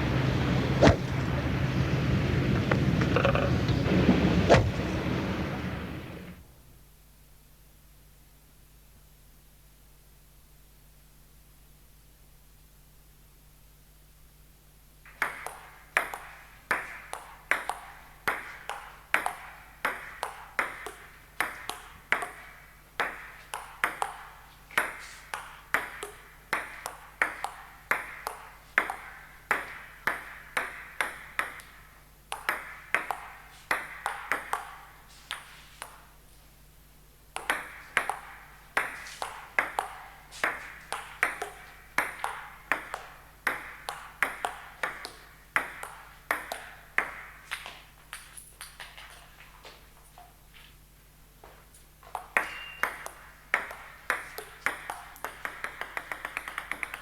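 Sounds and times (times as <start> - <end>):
short sharp ringing taps: 52.4 - 53.2.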